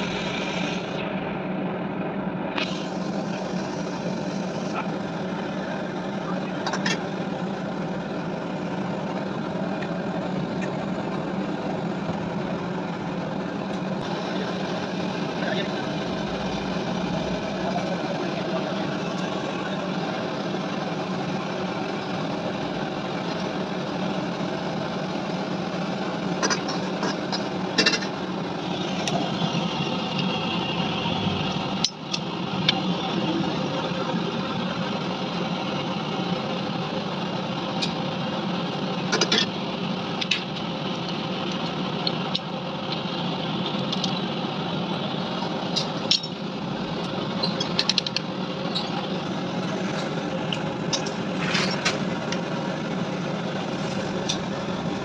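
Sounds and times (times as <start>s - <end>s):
machine humming: 0.0s - 55.0s.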